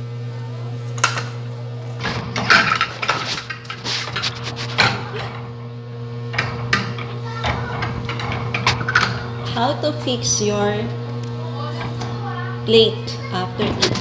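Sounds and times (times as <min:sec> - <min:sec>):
steady low hum: 0:00.0 - 0:14.0
dog food plate clattering and scraping: 0:02.0 - 0:05.5, 0:06.4 - 0:09.6, 0:13.6 - 0:14.0.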